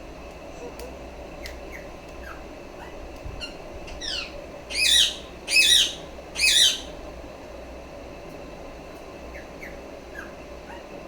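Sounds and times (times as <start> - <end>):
parrot chirps: 4.0 - 6.9
parrot harsh screeches: 4.8 - 6.9.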